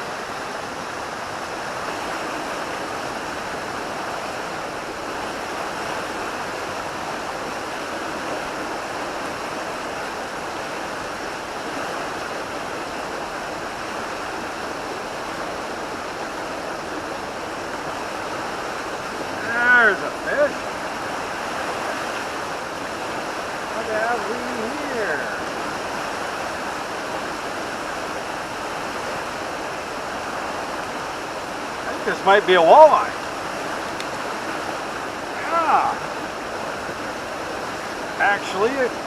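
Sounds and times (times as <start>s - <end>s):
river current rushing: 0.0s - 39.0s.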